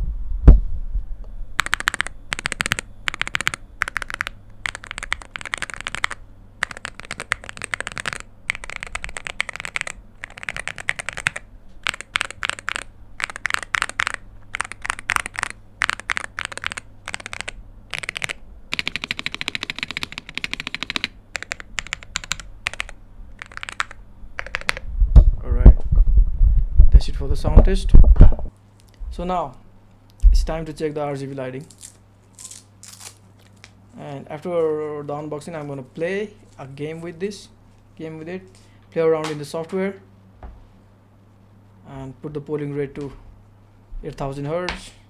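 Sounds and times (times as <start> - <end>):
fast typing on keyboard: 1.6 - 24.8.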